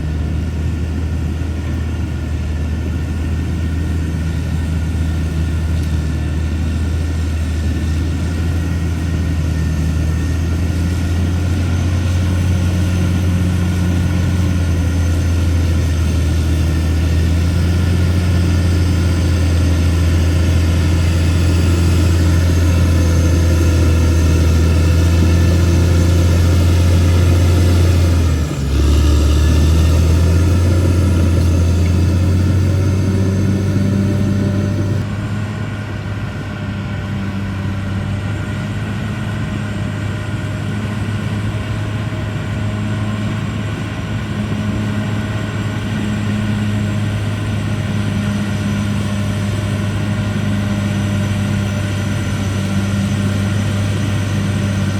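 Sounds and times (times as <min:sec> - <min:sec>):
bulldozer diesel engine droning: 0:00.0 - 0:54.9.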